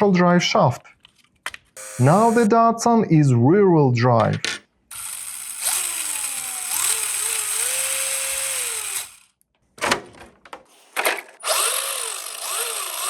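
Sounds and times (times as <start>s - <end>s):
electric motor whining: 1.8s - 2.5s, 4.9s - 9.2s, 11.4s - 13.0s.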